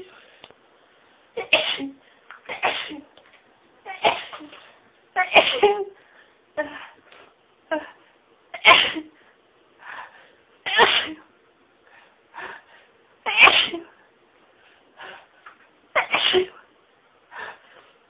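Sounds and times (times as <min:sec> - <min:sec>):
woman sneezing: 0:01.4 - 0:03.1, 0:03.9 - 0:06.0, 0:08.6 - 0:09.2, 0:10.7 - 0:11.2, 0:13.3 - 0:14.0, 0:16.0 - 0:16.6.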